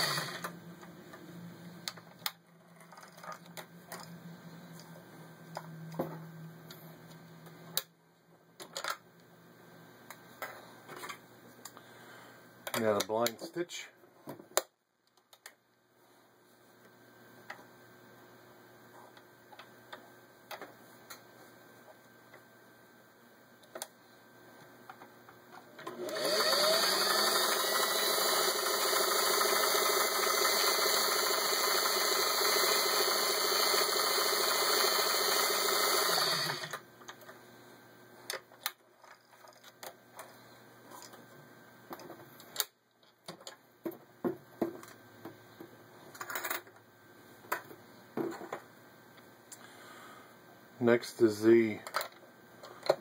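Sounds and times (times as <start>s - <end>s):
sewing machine running: 0.0s - 0.5s, 25.9s - 36.8s.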